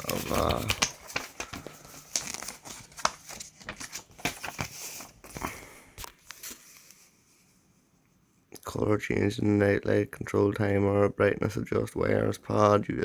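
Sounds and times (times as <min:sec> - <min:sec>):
paper pages crinkling and rustling: 0:00.0 - 0:07.2.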